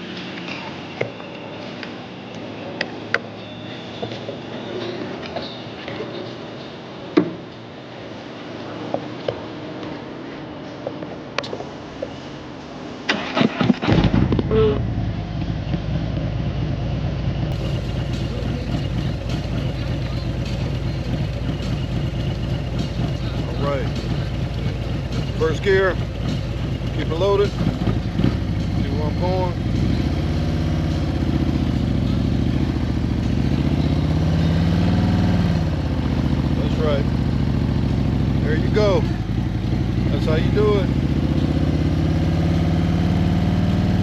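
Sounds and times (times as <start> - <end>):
motorcycle starter cranking: 13.1 - 14.1
motorcycle engine idling: 14.4 - 44.0.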